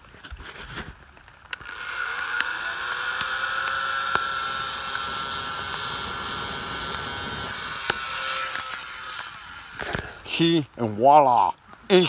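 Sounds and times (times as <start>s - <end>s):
electric air pump motor humming: 1.5s - 10.4s.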